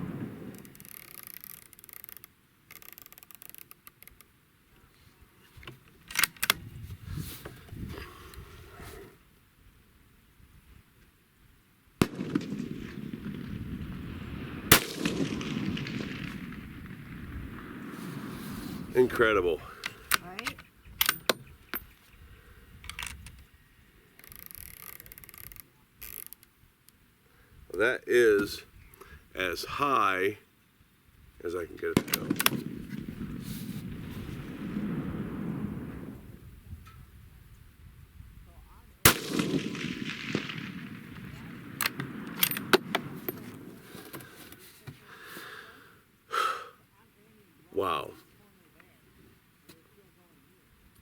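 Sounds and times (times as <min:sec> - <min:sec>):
rifle scope turret clicking: 0:00.5 - 0:04.3, 0:05.7 - 0:06.6, 0:24.2 - 0:26.5.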